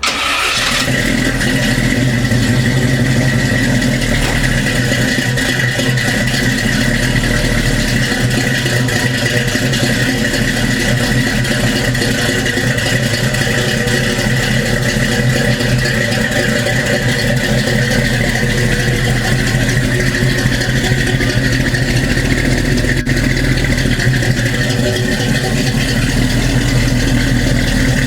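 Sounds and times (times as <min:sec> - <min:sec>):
car engine idling: 0:00.0 - 0:28.0.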